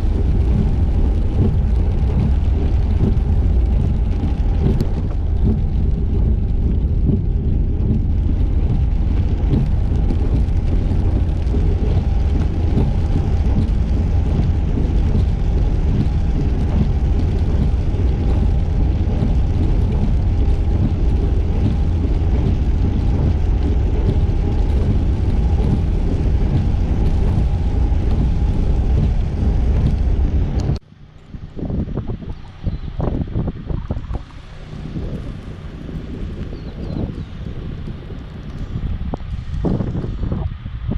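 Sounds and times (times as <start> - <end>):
car driving rumble: 0.0 - 40.9.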